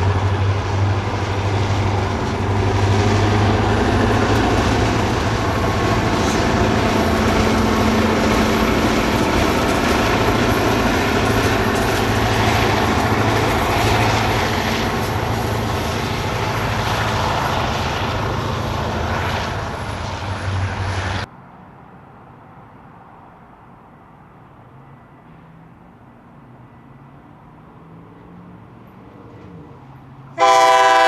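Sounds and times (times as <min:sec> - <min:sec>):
train wheels rumbling: 0:00.0 - 0:21.3.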